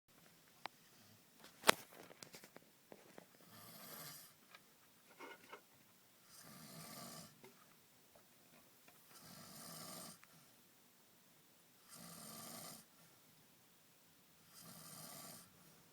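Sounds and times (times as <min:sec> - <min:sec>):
person snoring: 0:06.3 - 0:07.4, 0:09.2 - 0:10.2, 0:11.9 - 0:12.9, 0:14.5 - 0:15.5.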